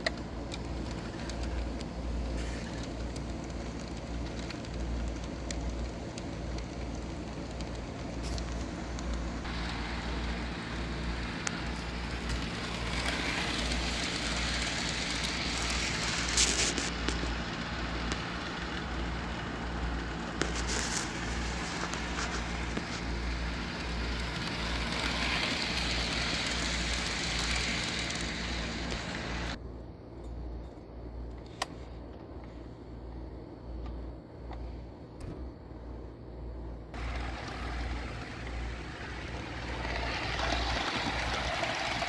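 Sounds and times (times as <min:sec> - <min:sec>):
model train wheels on rails: 0:00.0 - 0:29.6, 0:36.9 - 0:42.0.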